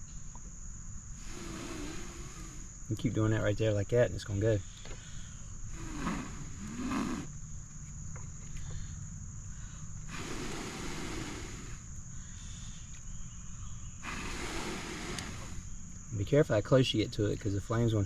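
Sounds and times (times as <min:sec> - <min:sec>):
crickets trilling: 0:00.0 - 0:18.0
blowing on tinder: 0:01.2 - 0:02.7, 0:05.7 - 0:07.3, 0:10.1 - 0:11.9, 0:14.0 - 0:15.8.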